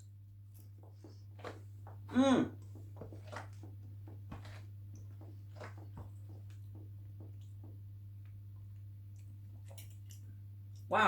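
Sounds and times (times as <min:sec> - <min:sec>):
low electrical hum: 0:00.0 - 0:11.0
person chewing: 0:09.1 - 0:10.8.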